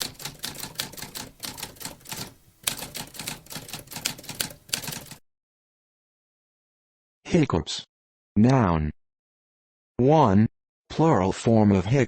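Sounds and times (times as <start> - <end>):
typewriter keys clacking: 0.0 - 5.2.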